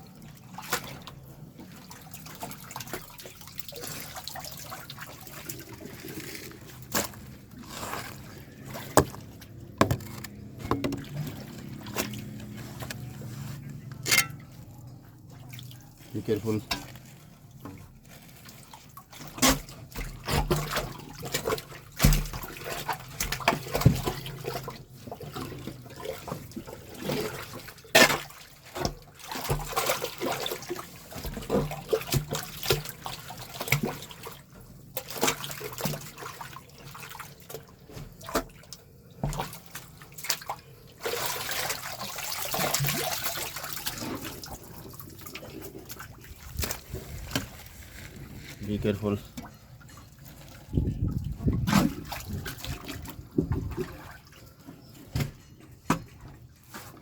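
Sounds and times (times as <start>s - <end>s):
drain water splashing and sloshing: 0.0s - 57.0s
knocks and clatters: 9.8s - 11.2s.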